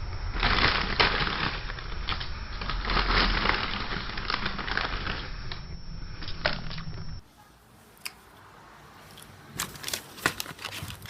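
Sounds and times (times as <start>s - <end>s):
crunching and crackling: 0.0s - 7.2s, 9.0s - 11.0s.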